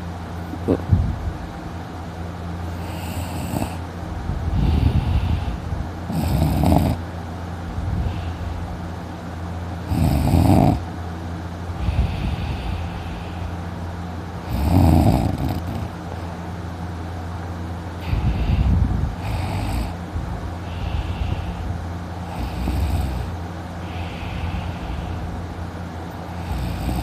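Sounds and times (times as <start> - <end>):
steady low hum: 0.0 - 27.0
man snoring loudly: 2.7 - 3.8, 6.1 - 7.0, 9.9 - 10.8, 14.4 - 16.0, 19.2 - 20.0, 22.2 - 24.8, 26.4 - 27.0.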